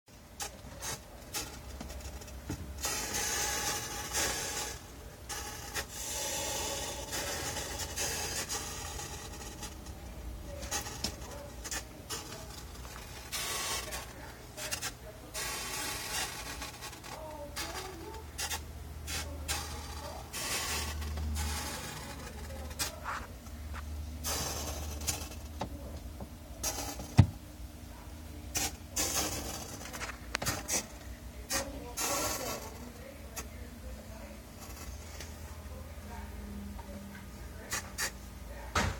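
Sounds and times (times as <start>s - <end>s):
refrigerator low hum: 0.1s - 38.9s
refrigerator crackling hiss: 0.4s - 23.0s, 24.2s - 25.8s, 26.5s - 27.5s, 28.5s - 33.1s.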